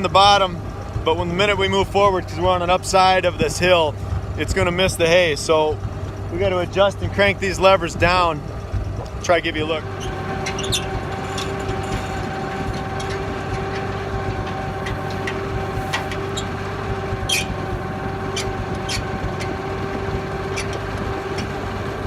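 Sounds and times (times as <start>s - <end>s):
tractor engine idling: 0.0s - 22.0s.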